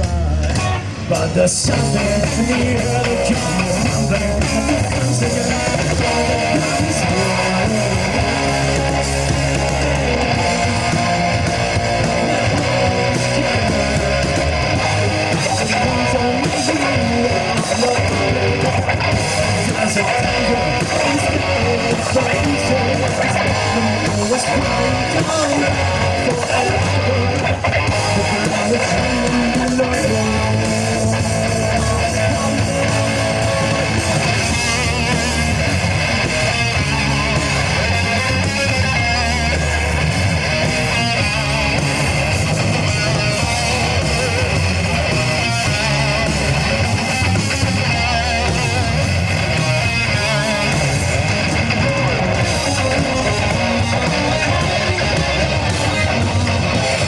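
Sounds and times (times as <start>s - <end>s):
bass guitar: 0.0s - 57.0s
strummed electric guitars: 0.0s - 57.0s.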